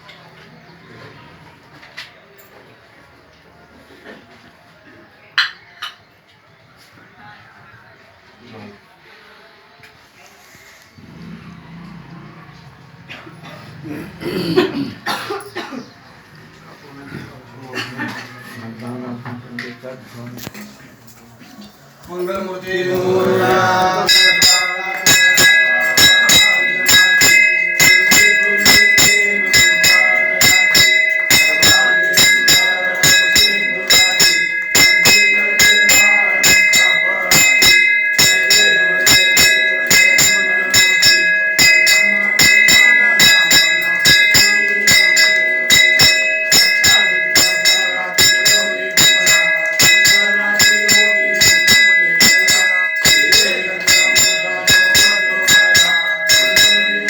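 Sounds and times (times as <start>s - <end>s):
temple bell rung rapidly: 22.7s - 57.0s.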